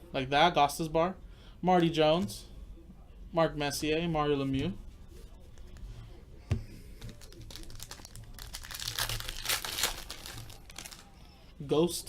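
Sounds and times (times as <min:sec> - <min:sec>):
packaging crinkling and rustling: 0:06.8 - 0:11.2.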